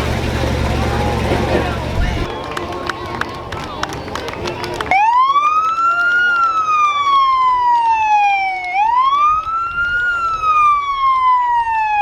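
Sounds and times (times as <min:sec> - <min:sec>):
emergency siren wailing: 0:04.7 - 0:12.0.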